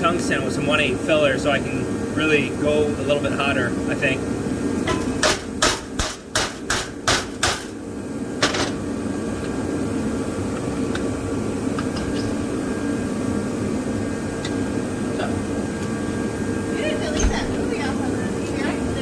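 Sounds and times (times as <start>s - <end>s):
steady background hum: 0.0s - 19.0s
hammer striking metal: 4.9s - 7.7s.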